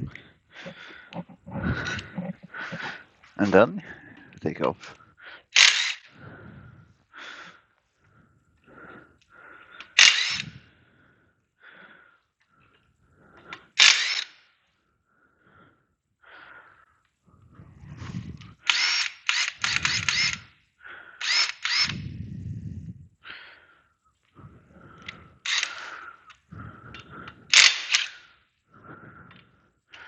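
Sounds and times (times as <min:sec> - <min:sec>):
power tool whirring: 0:05.6 - 0:06.1, 0:10.0 - 0:10.6, 0:13.8 - 0:14.3, 0:18.6 - 0:20.5, 0:21.2 - 0:22.1, 0:25.5 - 0:25.9, 0:27.5 - 0:28.2.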